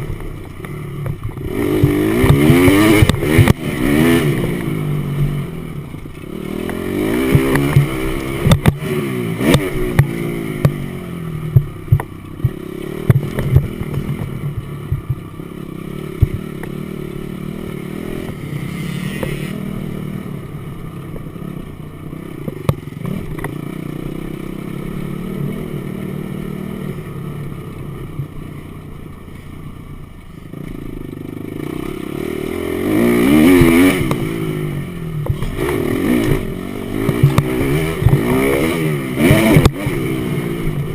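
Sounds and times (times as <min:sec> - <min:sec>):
dirt bike engine revving: 0:00.0 - 0:28.4, 0:30.5 - 0:40.9
knocks and clatter: 0:37.0 - 0:38.4.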